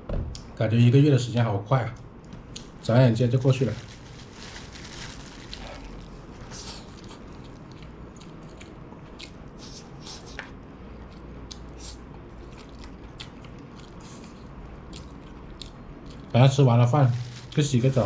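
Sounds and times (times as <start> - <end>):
low steady hum: 0.0 - 18.0
person chewing food: 5.5 - 16.3.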